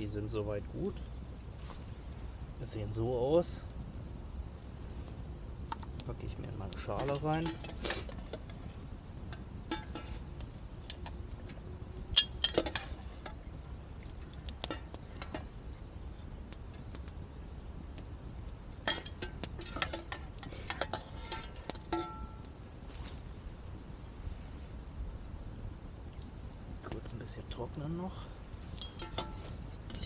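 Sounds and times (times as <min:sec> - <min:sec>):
metal cookware clinking: 0:06.9 - 0:07.8, 0:12.2 - 0:13.3, 0:18.9 - 0:22.4, 0:28.8 - 0:30.0.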